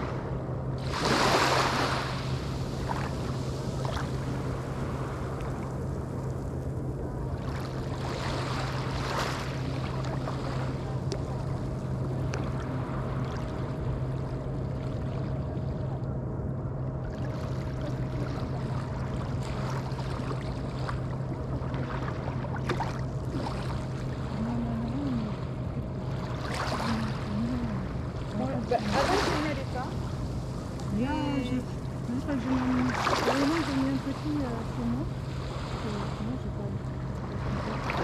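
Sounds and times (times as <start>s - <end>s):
steady low hum: 0.0s - 38.0s
waves washing onto sandy beach: 0.8s - 6.4s, 26.3s - 38.0s.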